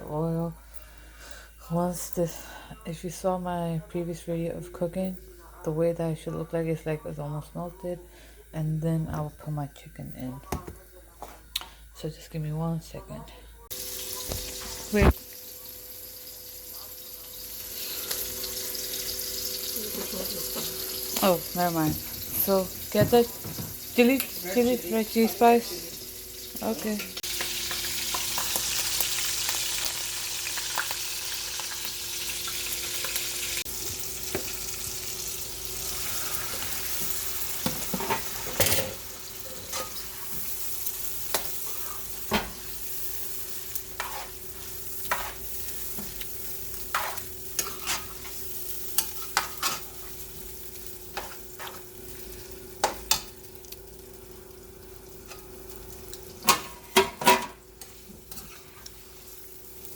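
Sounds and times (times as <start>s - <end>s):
chicken sizzling in oil: 13.7s - 59.9s.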